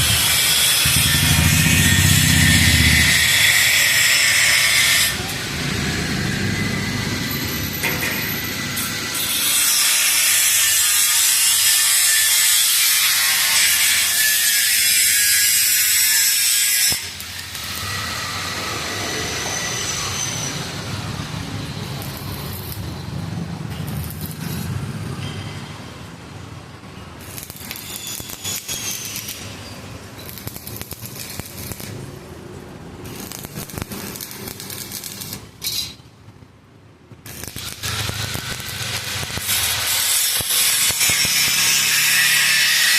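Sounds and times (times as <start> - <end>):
arc welding hiss and crackle: 0.0 - 25.1, 27.2 - 32.2, 33.0 - 36.0, 37.2 - 42.9.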